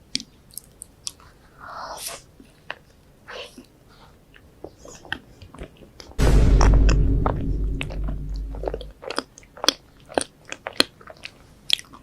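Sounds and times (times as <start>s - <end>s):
loud deep rumble with hum: 6.2s - 8.9s.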